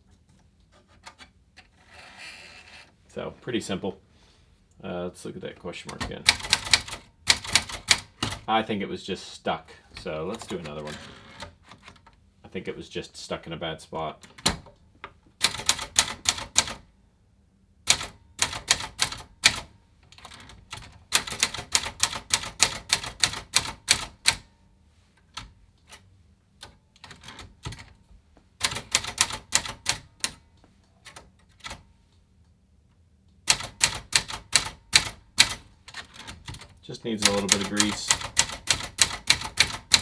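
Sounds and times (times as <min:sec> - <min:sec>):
typewriter key strikes: 0:05.9 - 0:08.5, 0:15.4 - 0:16.8, 0:17.9 - 0:20.4, 0:21.2 - 0:24.5, 0:28.6 - 0:30.4, 0:33.5 - 0:40.0.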